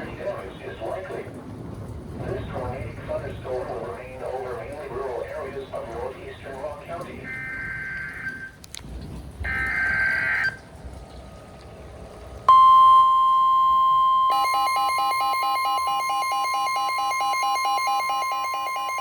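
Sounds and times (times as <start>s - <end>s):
rapid electronic alarm beeping: 7.2s - 8.5s, 9.5s - 10.6s, 12.5s - 19.0s
steady warning alarm tone: 7.2s - 8.6s, 9.5s - 10.6s, 12.5s - 19.0s.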